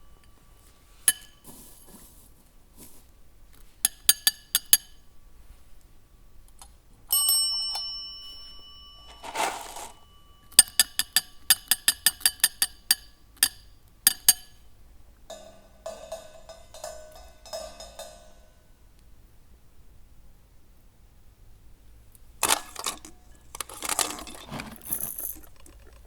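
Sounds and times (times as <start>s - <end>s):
sharp clinks and taps: 1.1s - 1.5s, 3.8s - 5.0s, 10.4s - 14.7s, 15.3s - 18.6s
rattle of low clinks: 22.4s - 26.0s.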